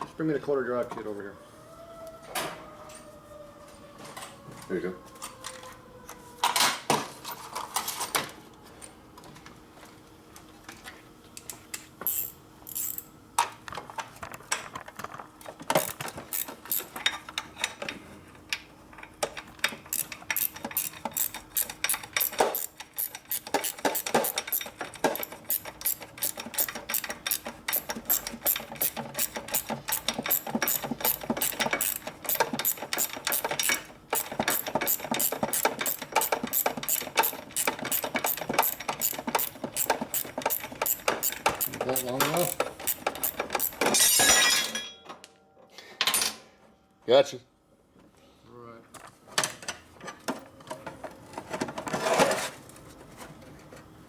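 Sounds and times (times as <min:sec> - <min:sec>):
socket ratchet clicking: 0:12.1 - 0:13.1, 0:15.8 - 0:16.9, 0:19.9 - 0:43.8.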